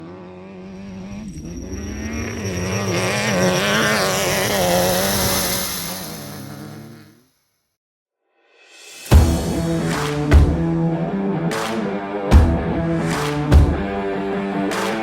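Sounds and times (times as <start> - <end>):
engine droning: 0.0 - 7.0.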